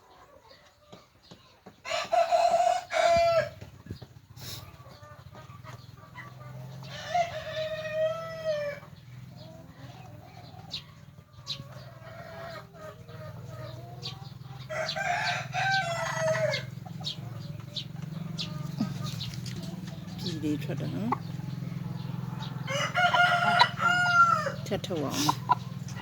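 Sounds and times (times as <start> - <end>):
rooster crowing: 1.9 - 3.6, 6.8 - 8.8, 14.7 - 16.7, 22.6 - 24.6.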